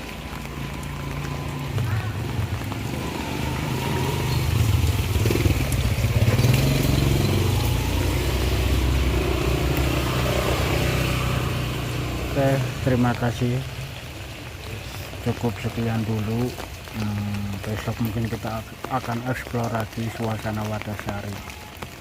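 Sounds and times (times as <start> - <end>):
motorbike engine passing: 0.3 - 13.1.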